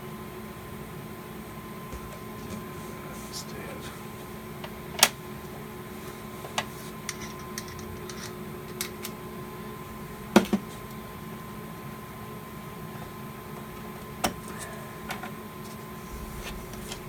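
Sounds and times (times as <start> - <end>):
faint steady hum: 0.0 - 17.0
clicks and knocks of tools: 6.6 - 9.2.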